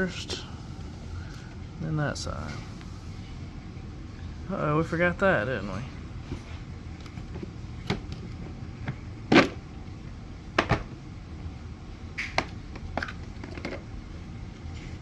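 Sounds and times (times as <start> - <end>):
vacuum cleaner parts knocking: 7.1 - 9.6, 10.5 - 11.0, 12.2 - 13.8.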